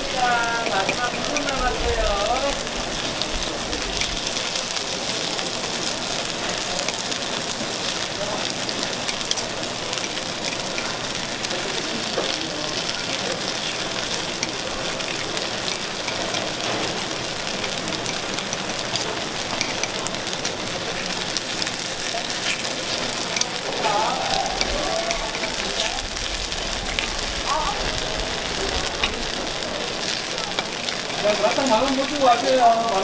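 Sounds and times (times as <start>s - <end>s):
food sizzling on a griddle: 0.0s - 33.0s.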